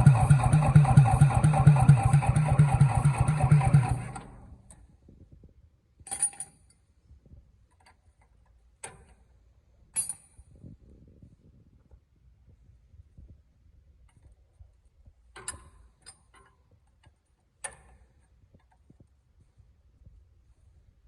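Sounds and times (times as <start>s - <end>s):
diesel engine cranking: 0.0s - 4.7s.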